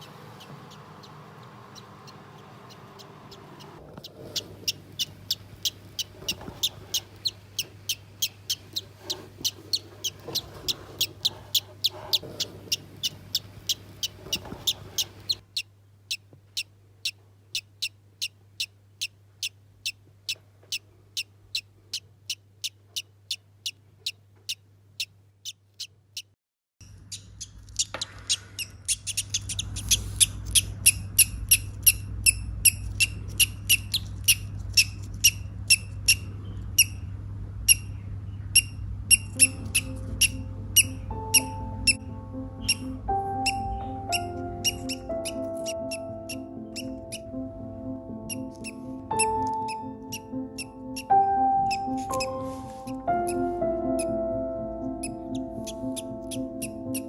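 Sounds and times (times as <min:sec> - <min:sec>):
parrot chick peeping: 0:00.0 - 0:57.0
low steady hum: 0:26.8 - 0:57.0.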